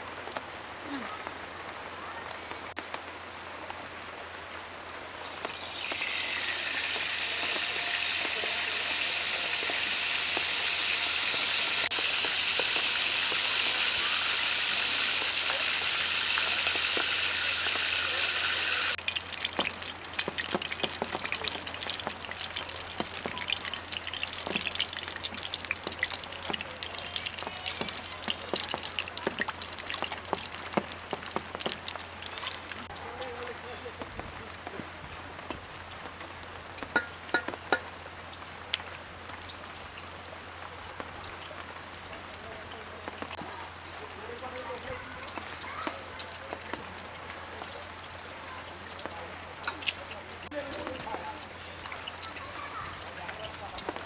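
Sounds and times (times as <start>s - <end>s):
oil popping: 5.2s - 32.8s, 36.8s - 38.0s, 48.8s - 54.0s
food sizzling in hot oil: 5.2s - 32.9s, 36.7s - 40.2s, 42.8s - 54.0s.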